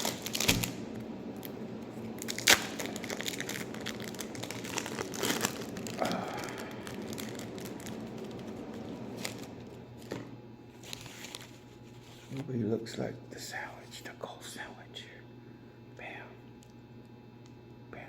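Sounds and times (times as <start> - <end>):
plastic packaging crinkling: 0.0 - 12.4
steady low hum: 0.0 - 18.0.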